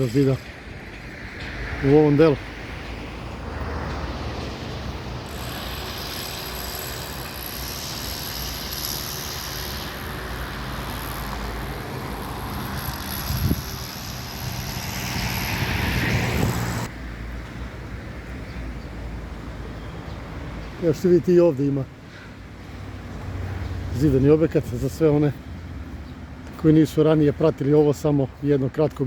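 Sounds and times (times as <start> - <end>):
vehicle engine noise: 0.0 - 17.0.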